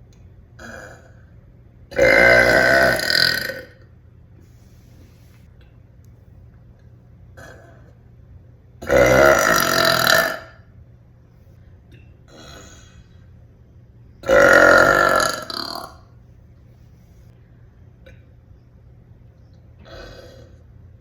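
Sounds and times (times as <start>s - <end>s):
woman burping loudly: 1.9s - 3.8s, 8.8s - 10.6s, 14.2s - 16.0s.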